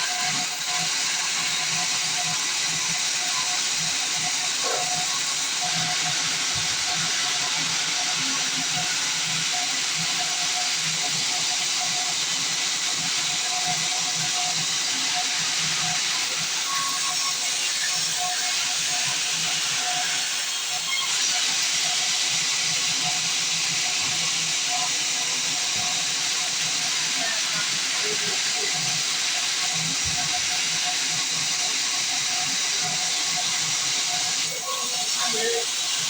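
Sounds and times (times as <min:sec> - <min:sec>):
band saw cutting log: 0:04.1 - 0:07.3.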